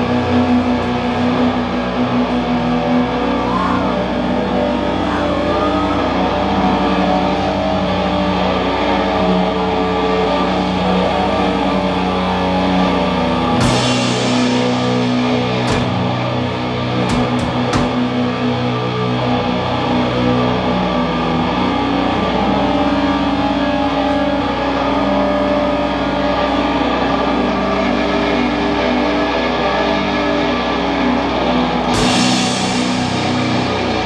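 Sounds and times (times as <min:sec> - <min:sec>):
droning distorted guitar chord: 0:00.0 - 0:34.0
cymbal crash: 0:13.6 - 0:16.4.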